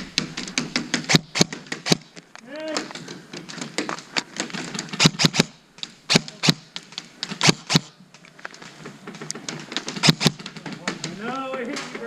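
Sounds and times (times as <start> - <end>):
airsoft gun shots: 0.9 - 2.1, 4.9 - 6.7, 7.3 - 8.0, 9.9 - 10.5.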